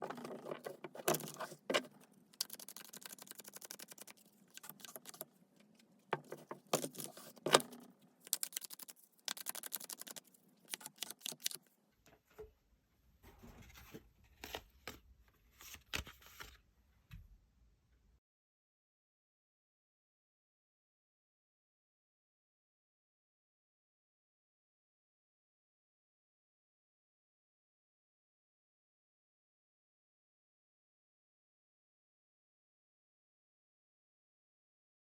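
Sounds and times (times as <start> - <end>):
cards being shuffled: 0.1 - 5.3, 6.4 - 11.6, 15.6 - 16.6.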